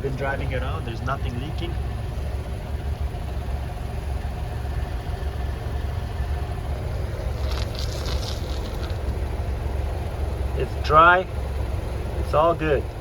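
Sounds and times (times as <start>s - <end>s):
car engine idling: 0.0s - 13.0s
rustling: 7.2s - 9.2s.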